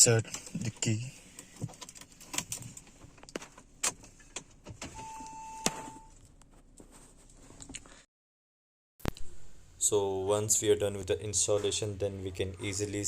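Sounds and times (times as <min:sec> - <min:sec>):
electronic car beep: 0:04.9 - 0:06.1.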